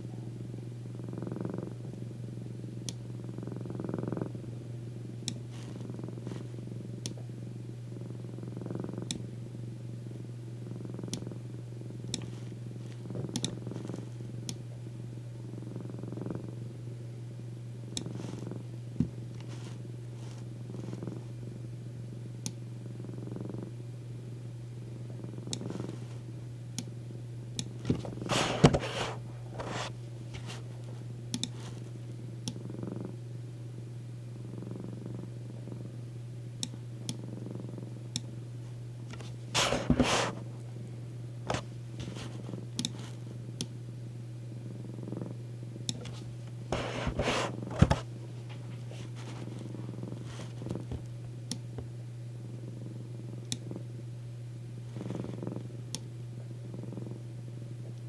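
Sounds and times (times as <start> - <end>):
cat purring: 0.1 - 7.3, 7.9 - 9.2, 10.6 - 14.5, 15.4 - 16.7, 17.9 - 21.6, 22.8 - 23.8, 24.9 - 26.5, 27.6 - 33.2, 34.4 - 36.0, 37.2 - 38.0, 39.1 - 40.7, 44.7 - 51.2, 54.8 - 55.8, 56.6 - 57.2
rustling scrapes: 19.4 - 20.4, 27.8 - 31.0, 39.1 - 40.5, 41.5 - 43.2, 46.0 - 51.0.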